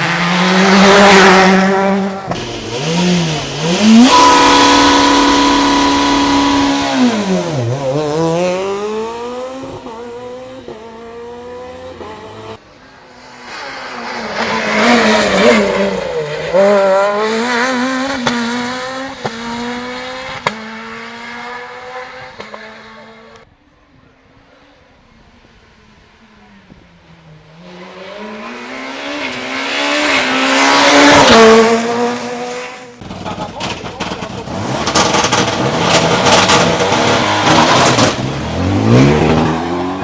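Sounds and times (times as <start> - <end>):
rally car engine at full throttle: 0.0 - 40.0
rally car passing and accelerating: 0.0 - 40.0.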